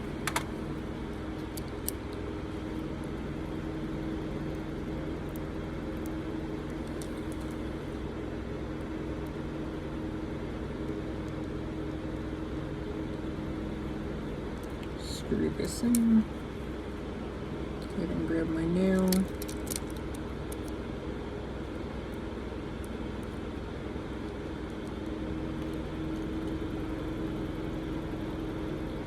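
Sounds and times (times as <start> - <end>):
low machine hum: 0.0 - 29.0
light clicks of small parts: 15.8 - 16.2, 19.0 - 20.8.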